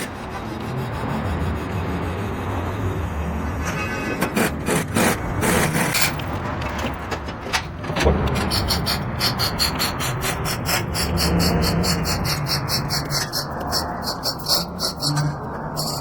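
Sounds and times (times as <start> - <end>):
hand tool scraping: 0.0 - 0.8, 3.8 - 6.9, 8.3 - 16.0.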